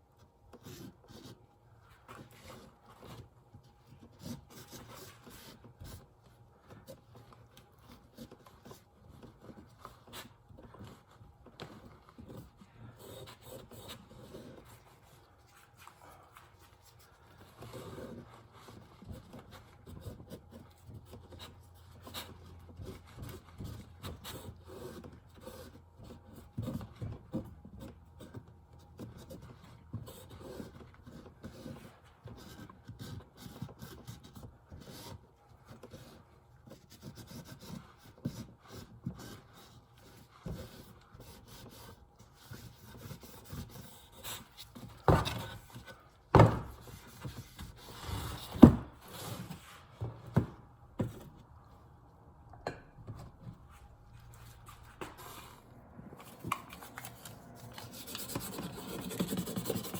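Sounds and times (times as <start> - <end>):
rubbing and scraping: 53.6 - 59.9.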